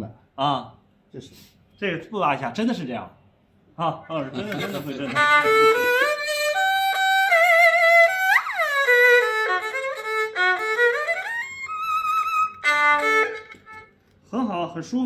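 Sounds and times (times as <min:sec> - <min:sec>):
bowed erhu melody: 0:04.6 - 0:14.0.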